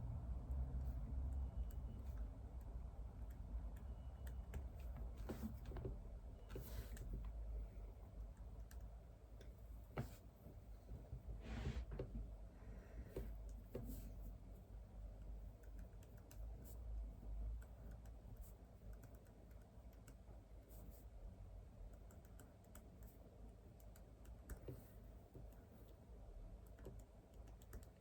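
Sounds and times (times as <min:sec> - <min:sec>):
low steady hum: 0:00.0 - 0:28.0
typing on computer keyboard: 0:15.5 - 0:16.6, 0:17.6 - 0:20.3, 0:21.9 - 0:25.6, 0:26.6 - 0:28.0.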